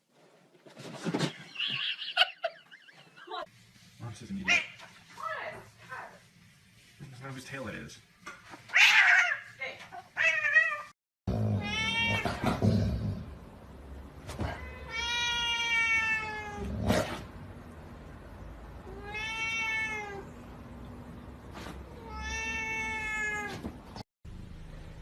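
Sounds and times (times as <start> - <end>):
cat meowing: 11.6 - 12.4, 14.4 - 16.7, 18.8 - 20.4, 21.9 - 23.7.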